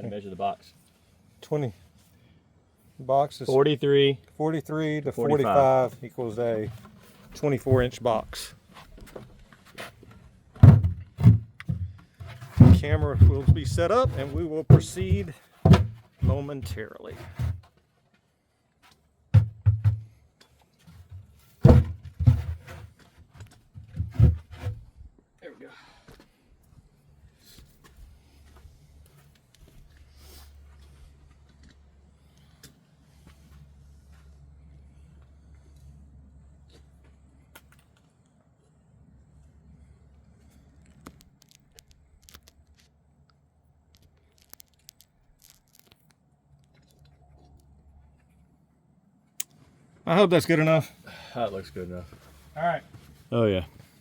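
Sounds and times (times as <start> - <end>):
camera handling bumps: 44.0 - 46.1.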